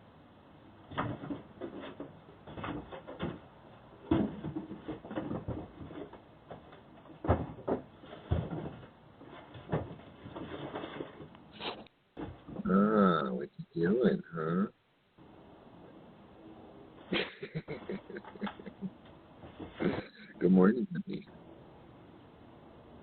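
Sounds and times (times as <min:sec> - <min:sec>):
hard objects knocking and clunking: 0:00.9 - 0:11.5, 0:12.2 - 0:12.8, 0:17.5 - 0:20.1.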